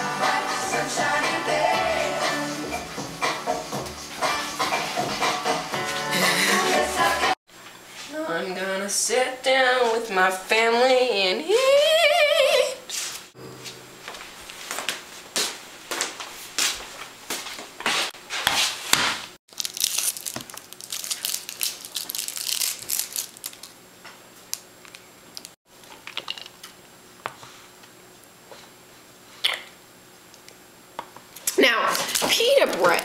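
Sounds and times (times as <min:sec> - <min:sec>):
crunching crinkling handling noise: 0:19.5 - 0:26.6.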